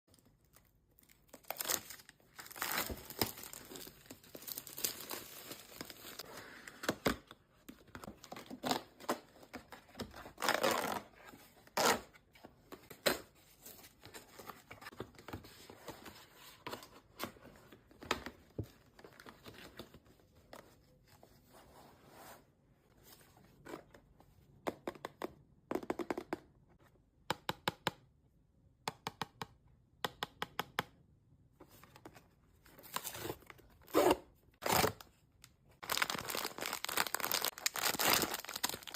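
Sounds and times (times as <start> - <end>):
packaging tearing and crinkling: 35.8 - 38.9.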